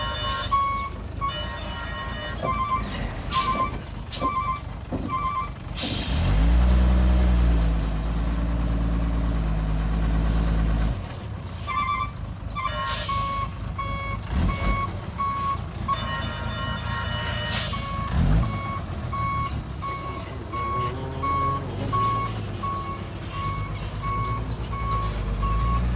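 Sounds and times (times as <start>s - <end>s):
reversing alarm beeping: 0.0s - 5.6s, 11.7s - 25.9s
diesel engine running: 0.0s - 25.9s.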